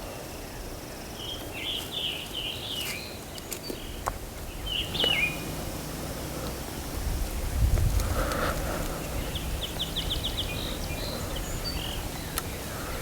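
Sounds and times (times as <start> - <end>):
songbirds chirping: 0.0 - 13.0
low outdoor rumble: 3.8 - 13.0.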